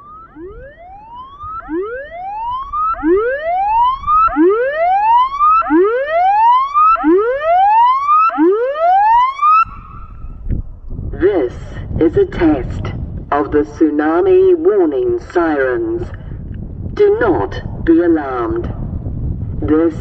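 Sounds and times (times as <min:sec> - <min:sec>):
warning siren rising whoop: 0:00.0 - 0:10.5.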